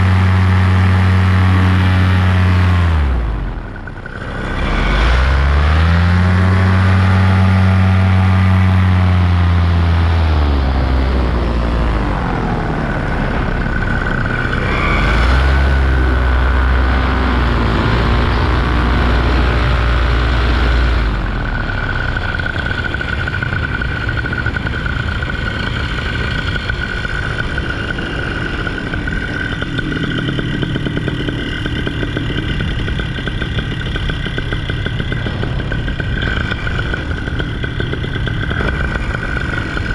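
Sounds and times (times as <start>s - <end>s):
paramotor engine running: 0.0s - 39.9s
thin high tone: 11.3s - 18.5s.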